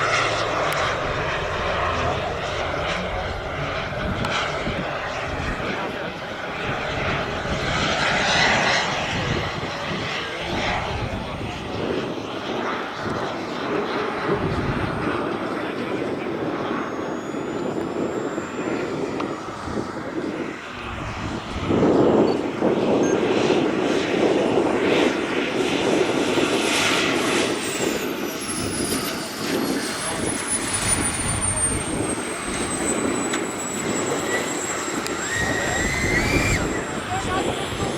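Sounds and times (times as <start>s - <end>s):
model jet rushing noise: 0.0s - 37.9s
high turbine whistle: 14.0s - 37.9s.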